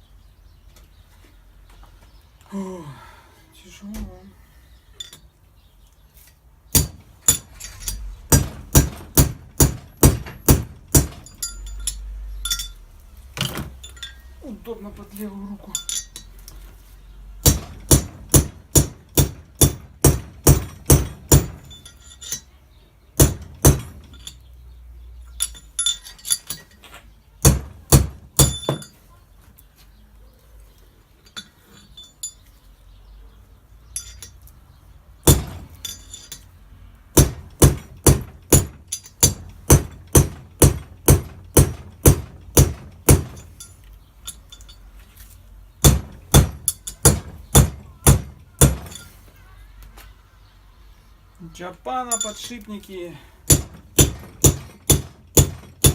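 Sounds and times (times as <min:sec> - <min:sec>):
hammer striking metal: 0:06.7 - 0:12.8, 0:17.4 - 0:22.5, 0:23.2 - 0:24.4, 0:35.2 - 0:36.4, 0:37.2 - 0:44.7, 0:45.8 - 0:49.2, 0:53.5 - 0:55.9.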